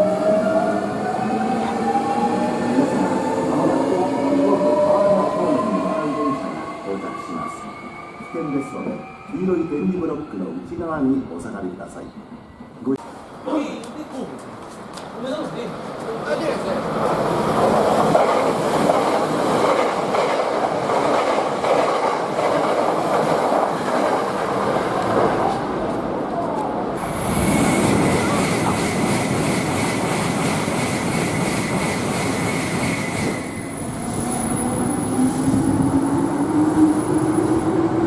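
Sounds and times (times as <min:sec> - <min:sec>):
train wheels rolling on rails: 0:13.0 - 0:38.0.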